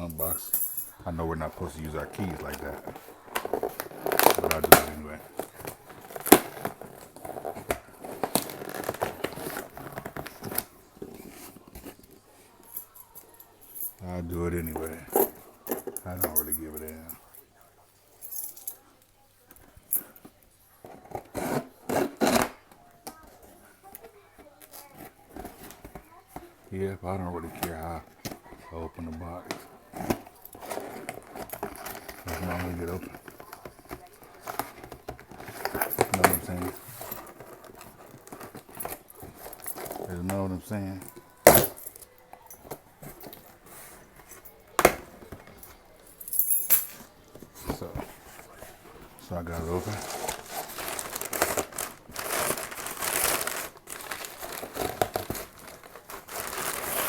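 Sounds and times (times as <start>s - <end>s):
keys clinking: 0.0s - 1.0s, 35.4s - 47.1s
cardboard and tape ripping: 2.1s - 12.0s, 20.9s - 22.8s, 49.3s - 57.0s.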